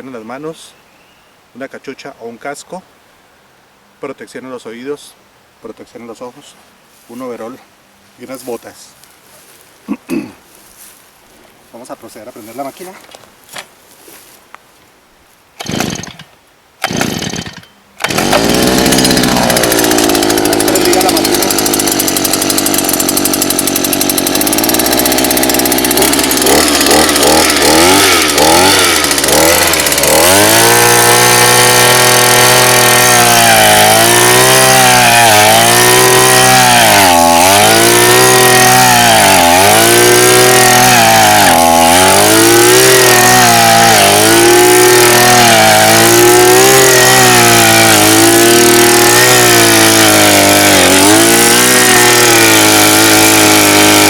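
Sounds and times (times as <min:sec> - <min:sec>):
small engine revving: 0:16.8 - 0:54.0.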